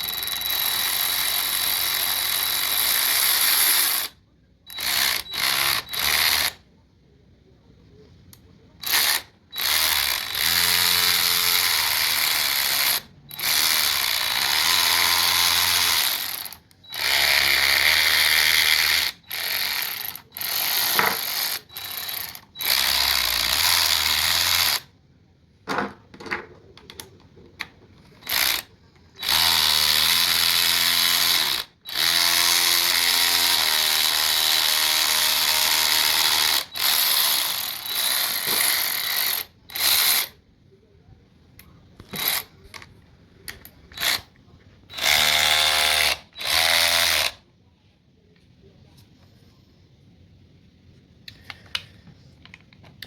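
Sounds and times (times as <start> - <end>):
electric ratchet motor whine: 8.8 - 24.8, 28.3 - 40.3, 44.9 - 47.4.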